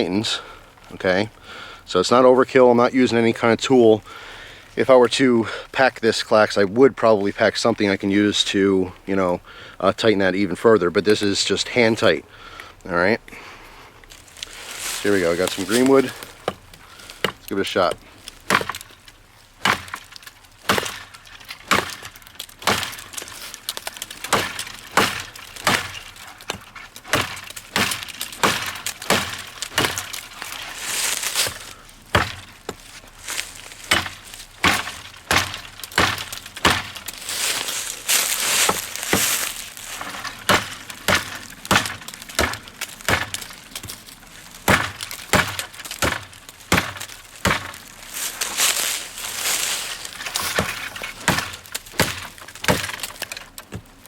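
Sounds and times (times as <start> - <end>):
hatchet chopping wood: 15.4 - 19.0, 19.6 - 54.0.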